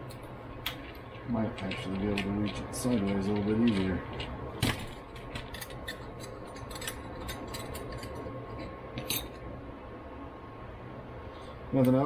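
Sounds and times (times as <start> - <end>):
small metal parts clinking: 5.2 - 8.2.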